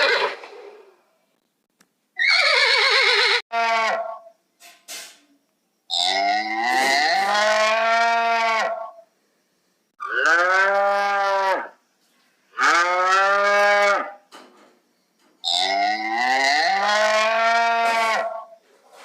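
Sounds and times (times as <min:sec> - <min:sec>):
cow mooing: 0:06.1 - 0:08.9, 0:10.0 - 0:11.7, 0:12.6 - 0:14.2, 0:15.5 - 0:18.5.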